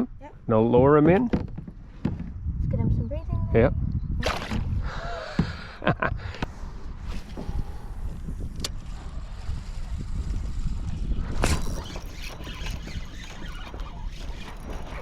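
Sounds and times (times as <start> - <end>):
wind rumble on microphone: 0.0 - 15.0
water and kayak noises: 4.2 - 15.0.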